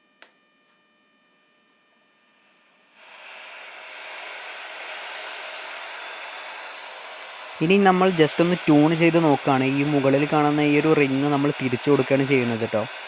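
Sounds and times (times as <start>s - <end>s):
radio static hiss: 3.0s - 13.0s.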